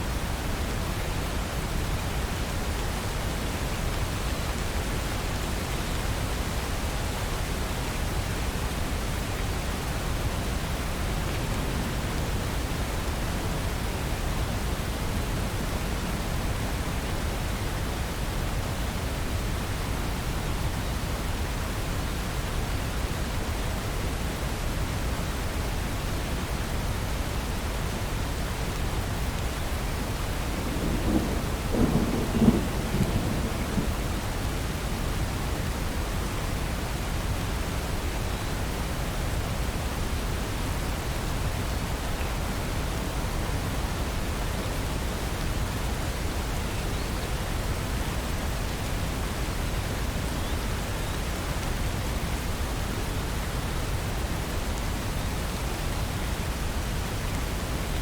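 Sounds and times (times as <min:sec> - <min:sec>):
steady rain: 0:00.0 - 0:58.0
thunder rumbling: 0:30.3 - 0:35.0.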